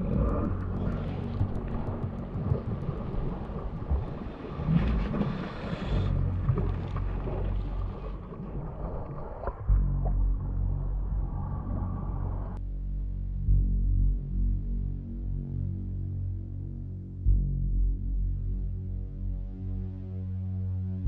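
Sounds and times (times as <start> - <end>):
low motor rumble: 0.0 - 5.3, 5.9 - 21.0
wind: 0.0 - 12.6
water: 0.0 - 21.0.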